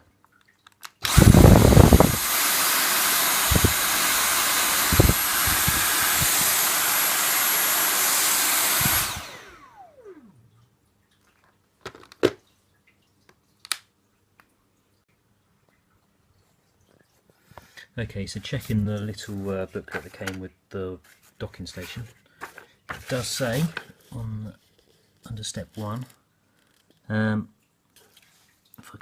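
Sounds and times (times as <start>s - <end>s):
motor winding down: 1.0s - 10.4s
vacuum cleaner whine: 1.0s - 10.4s.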